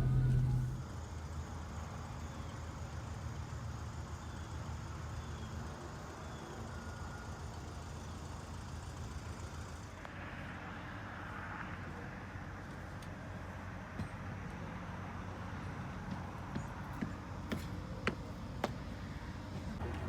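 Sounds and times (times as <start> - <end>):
vehicle engine rumble: 0.0 - 2.4, 8.0 - 20.0
road noise hiss: 0.0 - 20.0.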